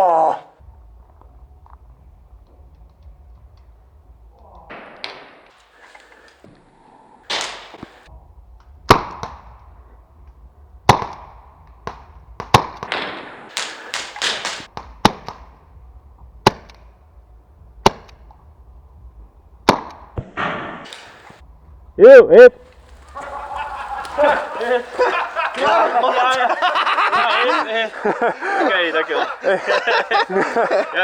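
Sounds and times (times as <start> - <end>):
paintball pistol pops: 7.3 - 8.0, 11.9 - 15.4, 19.7 - 21.4.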